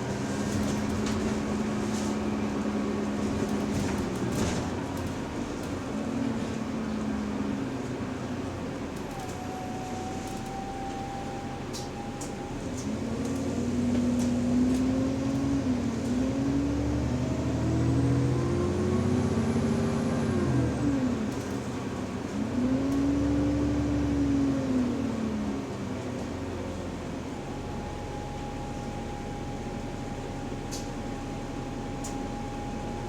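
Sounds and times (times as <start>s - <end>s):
bus engine rumble: 0.0s - 33.0s
drivetrain whine: 27.2s - 33.0s.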